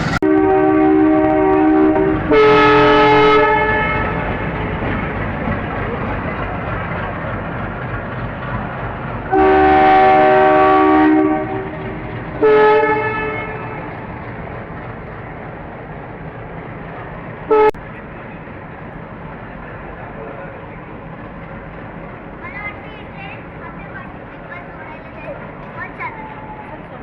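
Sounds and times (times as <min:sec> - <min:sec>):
diesel locomotive chugging: 0:00.0 - 0:27.0
locomotive horn blasts: 0:00.2 - 0:04.4, 0:09.3 - 0:13.9, 0:17.5 - 0:17.8.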